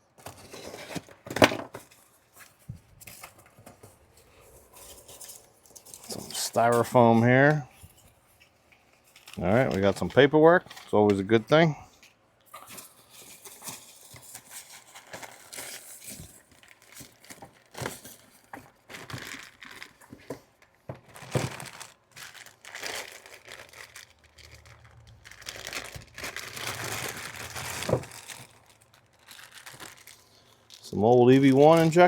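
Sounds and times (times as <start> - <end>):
packing material crinkling: 9.1 - 11.6, 12.8 - 32.0
packaging tearing: 13.5 - 20.2, 21.0 - 32.0.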